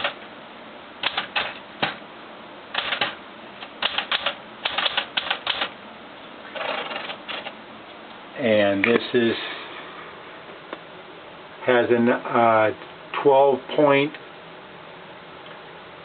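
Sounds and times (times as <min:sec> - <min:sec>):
manual typewriter keys clacking: 0:01.0 - 0:02.0, 0:02.8 - 0:05.7, 0:06.6 - 0:07.5.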